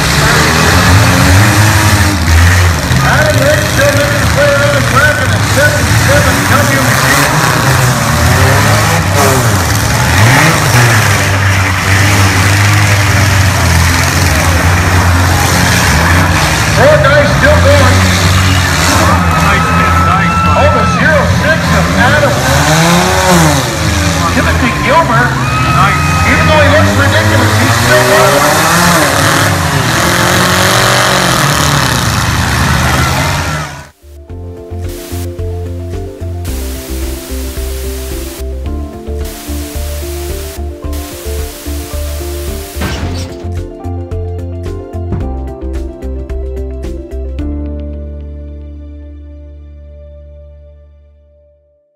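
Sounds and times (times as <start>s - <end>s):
noisy crowd: 0.0s - 34.0s
vehicle engines droning: 0.0s - 48.8s
music: 10.6s - 22.4s, 23.6s - 28.2s, 33.9s - 51.9s.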